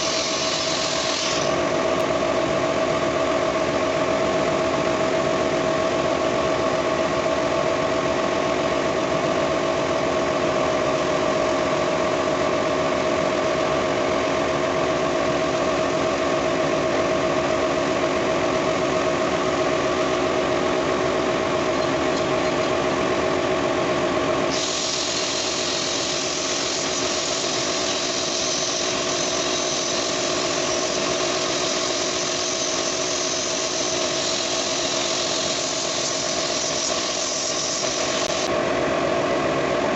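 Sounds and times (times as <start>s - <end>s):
high hiss: 0.0s - 1.7s, 24.5s - 38.5s.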